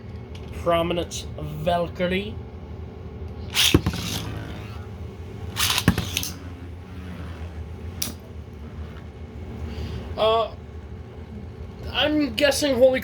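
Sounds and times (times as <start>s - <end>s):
low steady hum: 0.0s - 13.0s
spinning top launch burst: 3.5s - 8.2s
sharp knock: 3.6s - 4.2s
sharp click: 5.6s - 6.4s.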